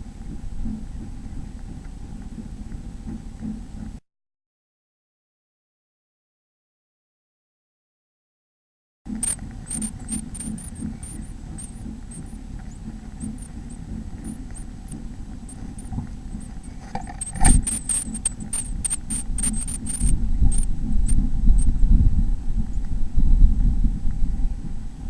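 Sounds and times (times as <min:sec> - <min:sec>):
nestling birds cheeping: 0:09.1 - 0:21.7
knocks and scratches against box: 0:15.5 - 0:20.7.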